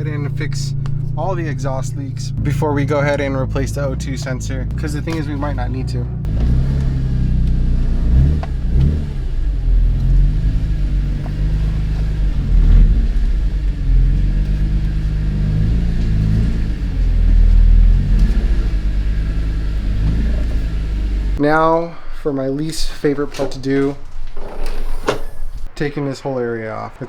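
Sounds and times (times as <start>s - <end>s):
car engine revving: 0.0s - 21.4s.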